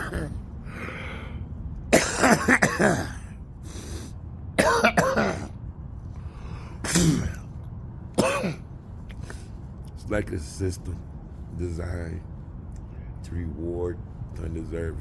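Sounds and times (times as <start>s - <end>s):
man coughing: 0.0s - 0.4s, 1.9s - 3.4s, 4.6s - 5.6s, 6.8s - 7.5s, 8.2s - 8.6s
soft breath: 0.6s - 1.6s, 6.1s - 6.8s.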